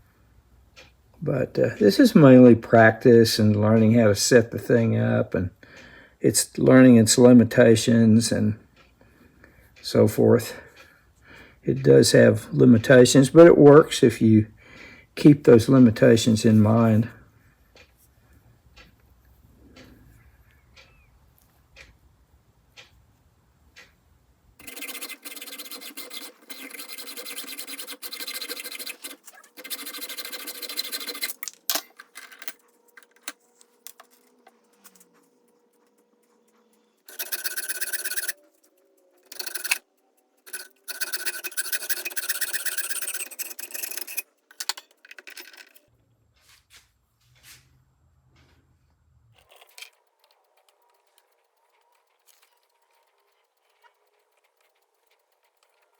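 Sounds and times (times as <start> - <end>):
metal lathe running: 24.6 - 31.6, 37.1 - 38.5, 39.2 - 39.8, 40.5 - 45.8
tool scraping spinning metal: 24.6 - 45.9, 49.4 - 55.9.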